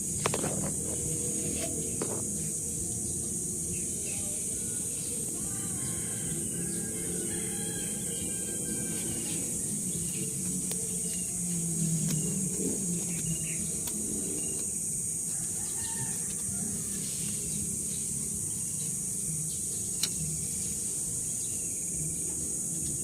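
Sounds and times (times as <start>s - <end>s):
high insect drone: 0.0s - 23.0s
low background rumble: 0.0s - 23.0s.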